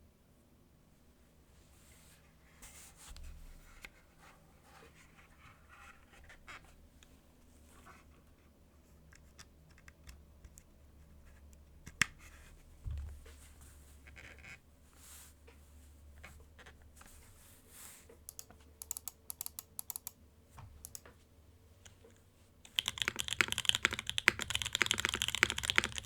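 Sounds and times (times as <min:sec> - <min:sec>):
mechanical keyboard typing: 0:18.3 - 0:20.2, 0:22.7 - 0:26.0.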